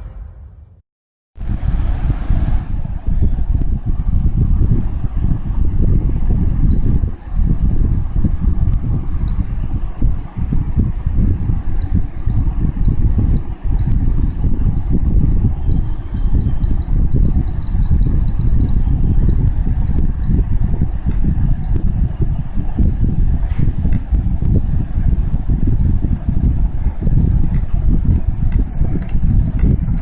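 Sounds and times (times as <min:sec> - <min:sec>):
loud low rumble: 0:00.0 - 0:00.8, 0:01.4 - 0:30.0
alarm buzzer beeping: 0:11.8 - 0:21.8, 0:24.6 - 0:25.2, 0:25.8 - 0:29.6.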